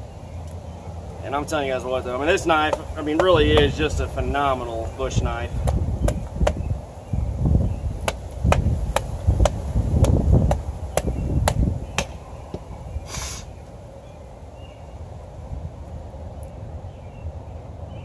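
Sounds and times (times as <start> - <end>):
wind rumbling on microphone: 2.0 - 18.0
knife chopping into wood: 2.6 - 3.8, 5.6 - 6.6, 8.0 - 12.2.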